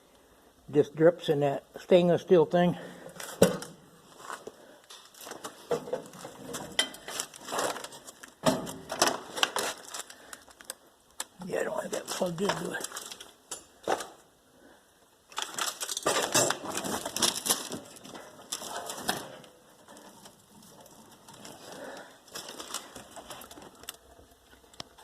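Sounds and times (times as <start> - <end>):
objects rattling and scraping: 3.0 - 10.7, 11.9 - 14.2, 15.3 - 25.0
faint clicks and rustling: 9.0 - 11.4.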